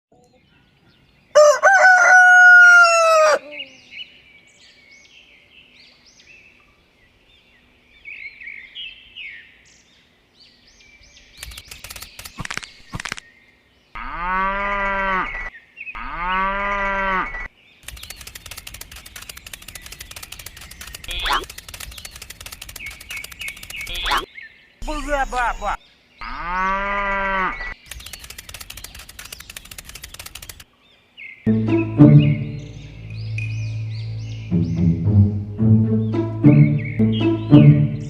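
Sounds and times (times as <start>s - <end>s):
rooster crowing: 1.4s - 3.6s
faint bird chirping: 3.4s - 14.2s, 15.2s - 26.8s, 27.5s - 38.0s
clicks: 17.8s - 24.3s.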